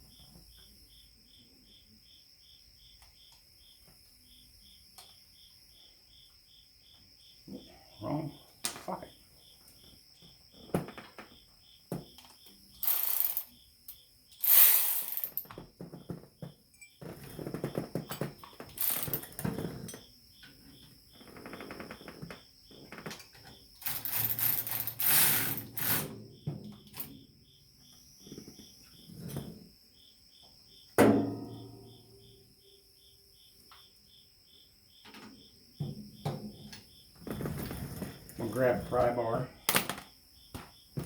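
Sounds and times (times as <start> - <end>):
cricket chirping: 0.0 - 41.0
metal tools clinking: 12.8 - 13.4, 18.1 - 20.0, 23.8 - 26.1.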